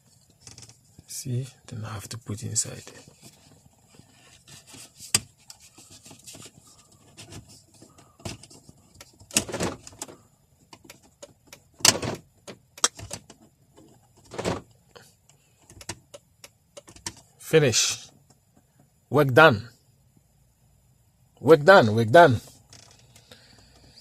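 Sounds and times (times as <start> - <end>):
plastic scraping rubs: 2.8 - 10.2.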